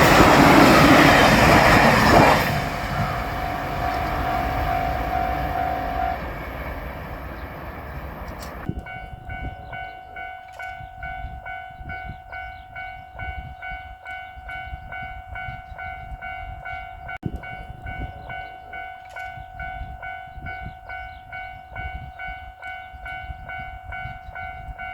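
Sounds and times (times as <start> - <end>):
electric train rushing past: 0.0 - 8.7.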